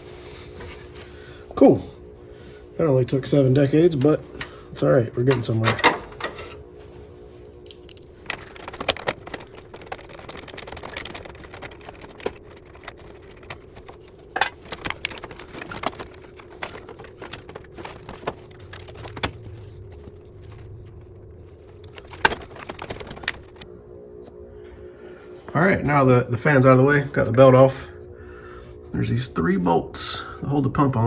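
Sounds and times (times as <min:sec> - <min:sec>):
plastic fan clicks and knocks: 0:08.2 - 0:20.6, 0:21.8 - 0:23.6.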